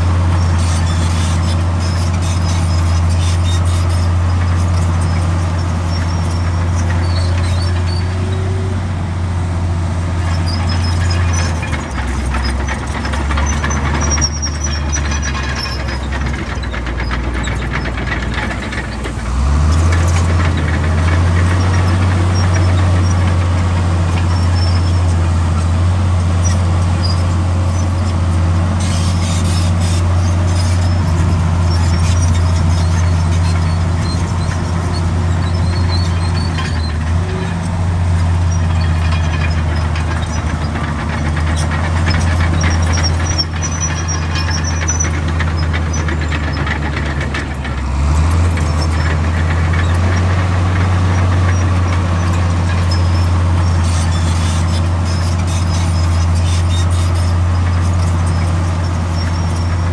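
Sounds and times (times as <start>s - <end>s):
heavy diesel engine running: 0.0s - 59.9s
faint high squeaks: 0.4s - 8.7s, 26.4s - 47.4s, 48.0s - 59.9s.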